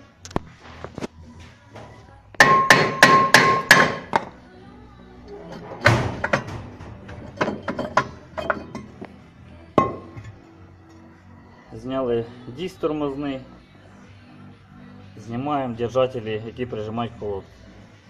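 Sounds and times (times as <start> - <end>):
hammer striking brake disc: 2.4 - 4.3, 9.8 - 10.3.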